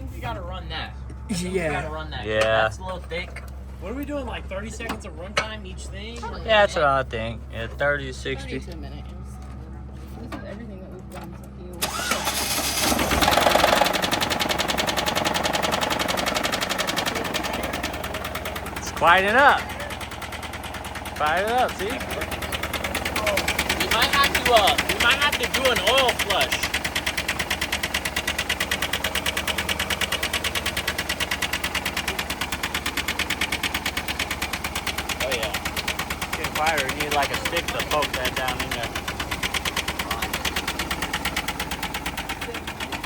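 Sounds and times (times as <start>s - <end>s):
engine running with rapid knocking: 11.4s - 43.0s.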